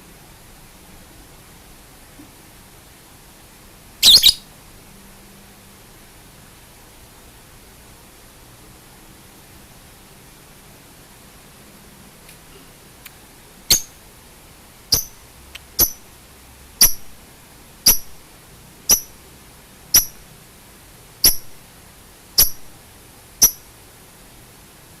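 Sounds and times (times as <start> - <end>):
high bird chirp: 4.0 - 4.5, 13.7 - 14.0, 14.9 - 15.2, 15.8 - 16.1, 17.9 - 18.1, 18.9 - 19.2, 20.0 - 20.2, 21.2 - 21.5, 22.4 - 22.7, 23.4 - 23.6.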